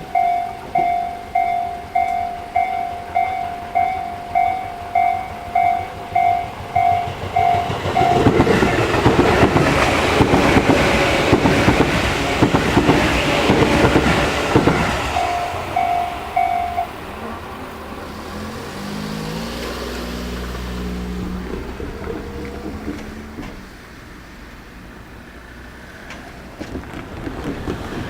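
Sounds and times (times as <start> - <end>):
train wheels clattering: 0.0 - 17.5, 19.6 - 23.8, 25.9 - 28.0
level crossing electronic bell: 0.1 - 8.3, 15.2 - 16.9.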